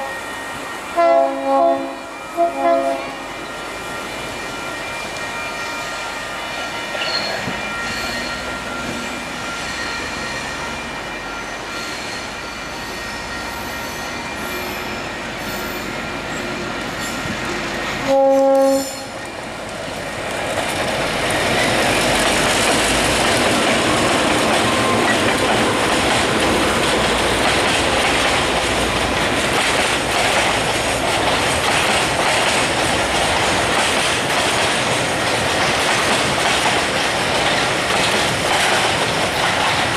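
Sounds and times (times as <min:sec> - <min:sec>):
train wagons rumbling and clattering: 0:00.0 - 0:39.9
locomotive horn blast: 0:01.0 - 0:03.3, 0:18.0 - 0:19.1.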